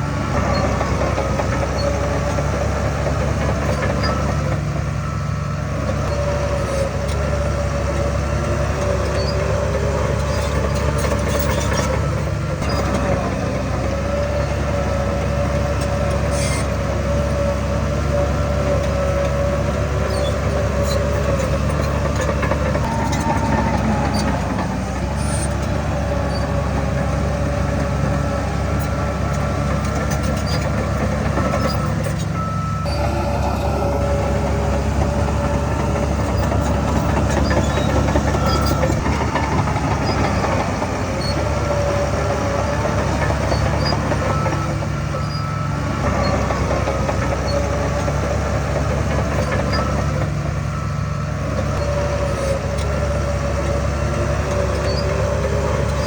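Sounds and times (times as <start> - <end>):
diesel machinery engine drone: 0.0 - 56.0
wavering whining tone: 19.3 - 46.7.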